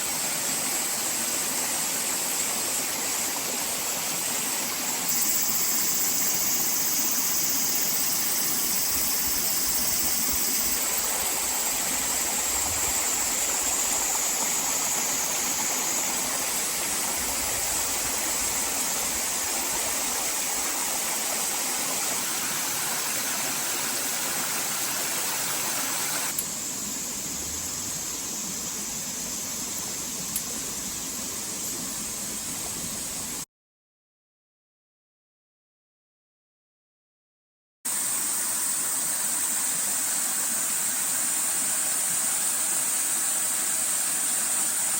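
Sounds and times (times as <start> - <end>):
rushing water: 7.7 - 26.3.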